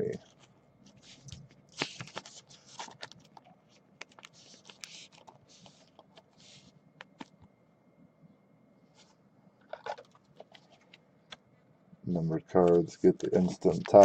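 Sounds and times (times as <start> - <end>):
cards sliding scrapes: 1.0 - 3.1.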